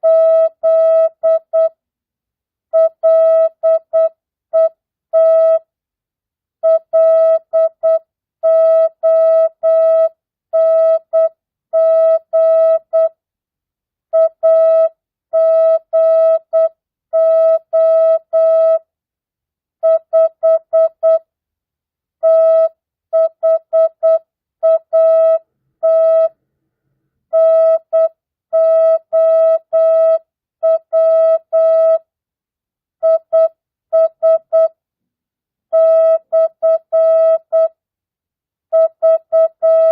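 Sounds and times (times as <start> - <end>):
morse code beeps: 25.0 - 26.3, 38.8 - 39.9.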